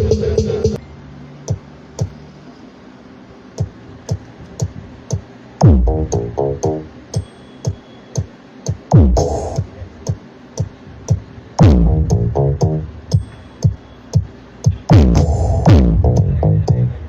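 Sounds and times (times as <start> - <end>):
electronic dance music: 0.0 - 0.8, 3.6 - 10.7, 11.6 - 17.0
sharp drum machine hits: 1.5 - 2.2, 3.6 - 16.9
deep bass drop: 5.6 - 6.9, 11.6 - 12.9, 14.9 - 17.0
stuttering synth notes: 5.6 - 6.9.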